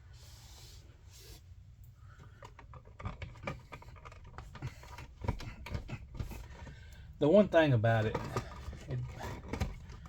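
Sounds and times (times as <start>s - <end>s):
clicks scrapes and knocks: 2.3s - 6.7s.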